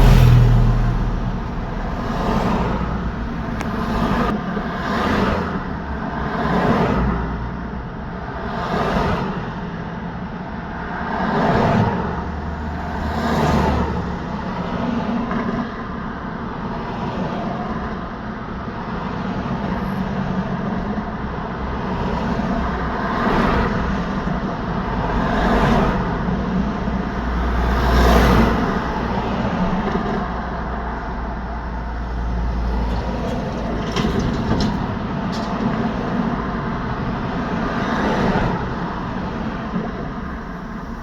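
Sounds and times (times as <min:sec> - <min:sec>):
deep rumble: 0:00.0 - 0:04.4
steady traffic hum: 0:00.0 - 0:41.0
vehicles passing close: 0:00.0 - 0:41.0.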